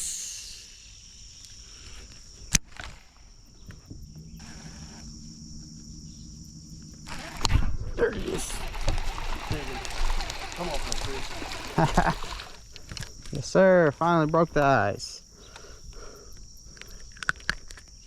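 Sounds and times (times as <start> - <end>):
insects droning: 0.0 - 18.0
low hum: 2.5 - 12.8.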